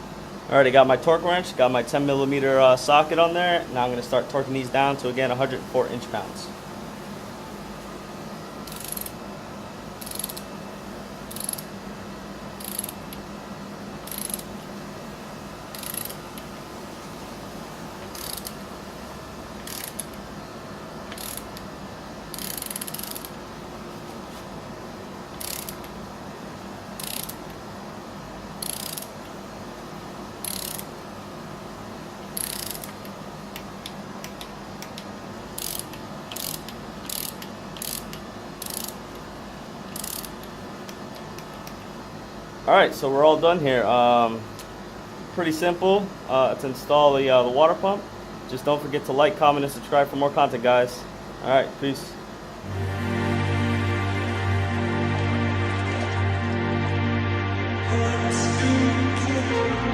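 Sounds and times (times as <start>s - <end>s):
torque wrench ratchet clicking: 8.7s - 9.2s, 10.0s - 10.5s, 11.3s - 11.7s, 12.6s - 13.2s, 14.1s - 14.5s, 15.7s - 16.2s, 18.1s - 18.6s, 19.6s - 20.2s, 21.1s - 21.6s, 22.3s - 23.4s, 25.4s - 25.8s, 27.0s - 27.4s, 28.6s - 29.1s, 30.4s - 30.9s, 32.4s - 33.0s, 35.6s - 39.0s, 39.9s - 40.4s.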